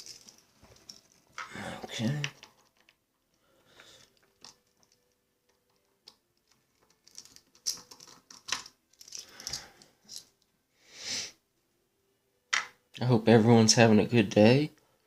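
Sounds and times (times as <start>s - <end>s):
small metal parts handled: 0.0s - 3.0s, 4.0s - 10.4s.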